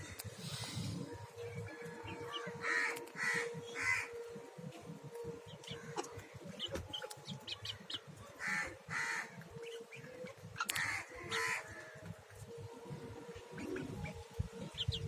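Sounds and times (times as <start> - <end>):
crows cawing: 2.6 - 4.1, 8.4 - 9.4, 10.7 - 12.0.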